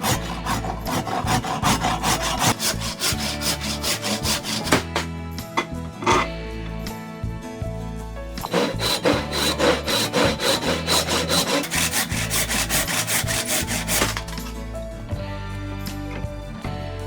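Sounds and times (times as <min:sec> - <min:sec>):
hand tool scraping: 0:00.0 - 0:06.4, 0:08.4 - 0:14.6
background music: 0:00.0 - 0:17.0.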